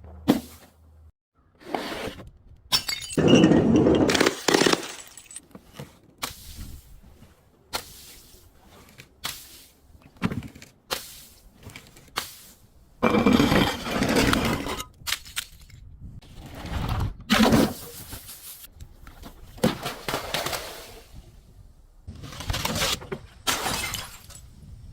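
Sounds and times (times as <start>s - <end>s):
glass breaking and crunching: 2.7s - 5.5s, 23.5s - 24.5s.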